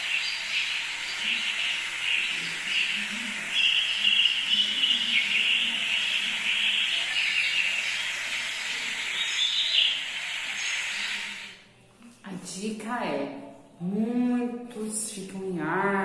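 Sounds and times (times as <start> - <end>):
birds chirping and singing: 0.0 - 11.5
steady hiss: 0.0 - 11.6.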